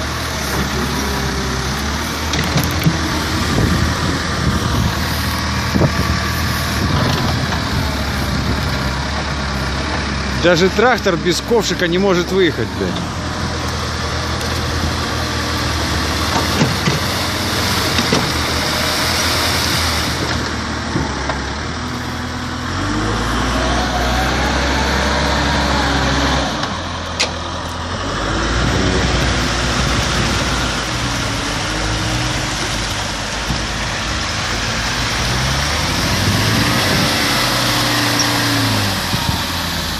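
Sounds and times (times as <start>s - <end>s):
tractor engine revving: 0.0s - 39.9s.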